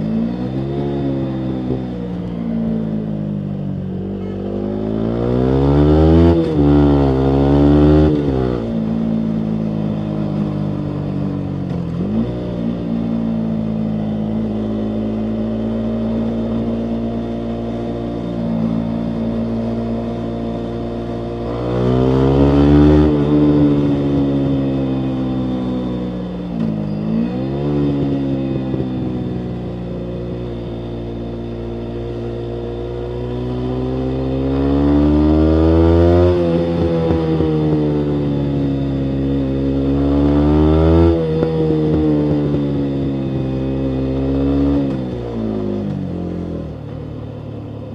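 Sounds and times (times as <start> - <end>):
motorcycle engine revving: 0.0 - 47.9.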